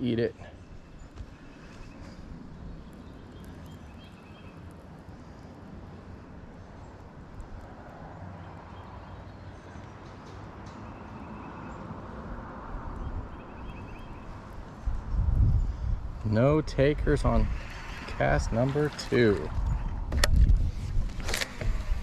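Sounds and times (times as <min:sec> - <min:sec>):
wind buffeting microphone: 0:12.6 - 0:22.0
water lapping against hull: 0:17.4 - 0:19.9.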